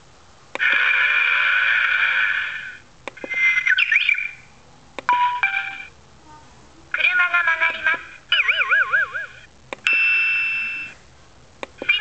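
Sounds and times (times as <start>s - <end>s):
short steady beeps: 9.9s - 11.0s.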